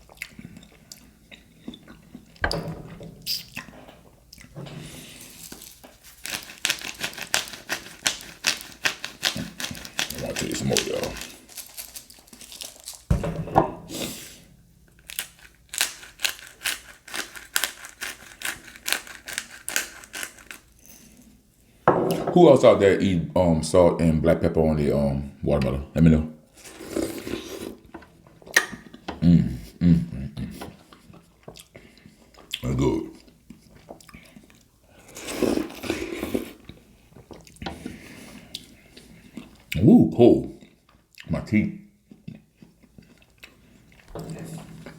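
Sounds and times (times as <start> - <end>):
chewing watermelon: 0.0 - 2.4, 3.3 - 13.1, 15.0 - 21.4, 30.8 - 39.8, 42.0 - 44.9
mouth clicks: 3.3 - 3.6
crunchy chewing: 4.3 - 13.1, 15.0 - 21.4.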